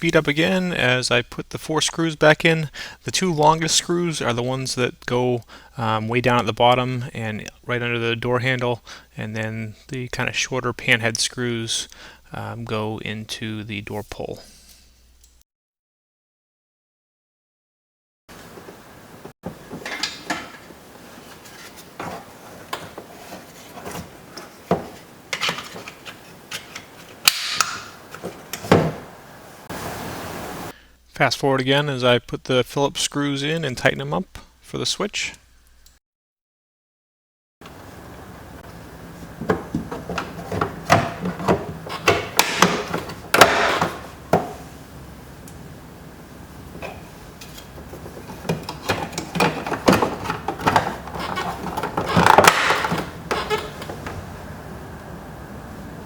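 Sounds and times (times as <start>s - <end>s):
scraping rattle: 46.7s - 54.3s.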